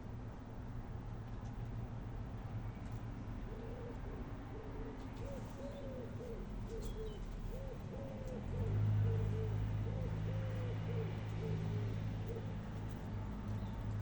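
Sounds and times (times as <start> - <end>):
pigeon cooing: 3.4 - 13.6.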